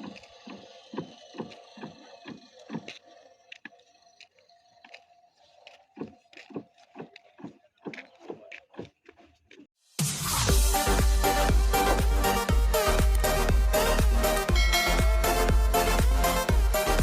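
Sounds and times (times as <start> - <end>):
irregular knocks and taps: 0.0 - 3.8, 5.6 - 9.7.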